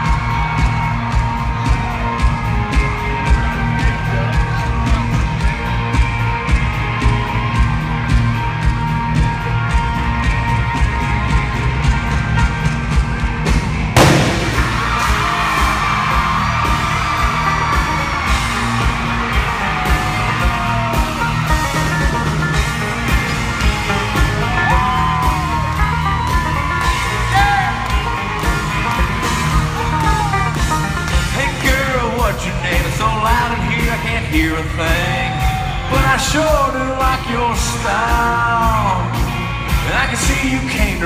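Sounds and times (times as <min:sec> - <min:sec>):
country rock band playing: 0:00.0 - 0:41.0
crowd whooping and yelling: 0:00.0 - 0:41.0
loud bang: 0:14.0 - 0:15.5.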